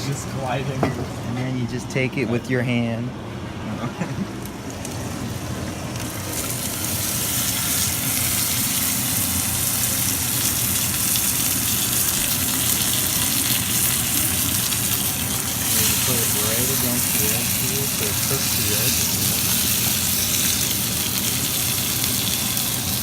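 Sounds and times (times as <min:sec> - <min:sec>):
steak sizzling in a pan: 0:05.9 - 0:23.0.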